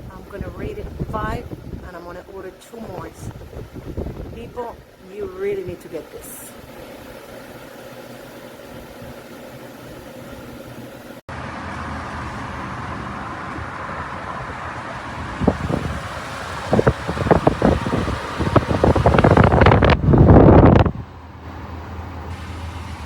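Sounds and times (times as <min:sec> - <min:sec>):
wind gusts buffeting microphone: 0:00.0 - 0:06.0, 0:11.6 - 0:21.2
tower fan running: 0:00.0 - 0:23.0.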